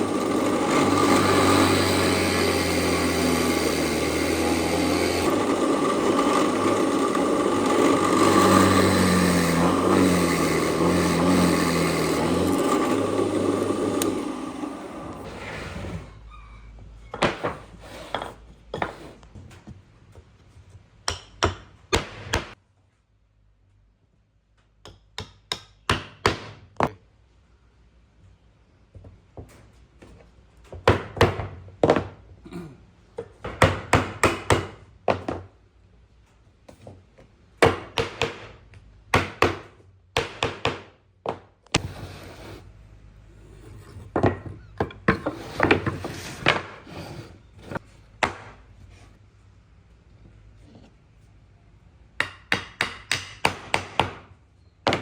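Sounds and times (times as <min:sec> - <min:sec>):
hammering on wood: 0:24.8 - 0:27.0, 0:33.4 - 0:35.5, 0:37.6 - 0:41.5, 0:52.2 - 0:54.3.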